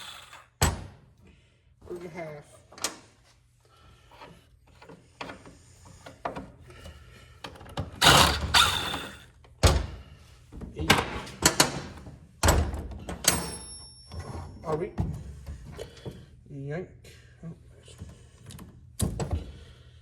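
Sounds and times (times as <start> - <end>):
rattling clatter of metal parts: 7.6 - 9.2.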